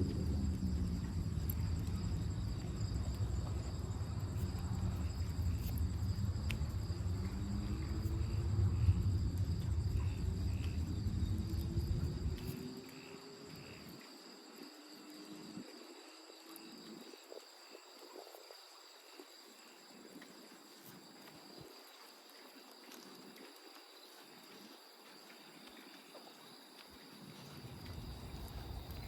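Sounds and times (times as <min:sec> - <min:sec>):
low rumble: 0:00.0 - 0:13.0
crickets trilling: 0:00.0 - 0:29.0.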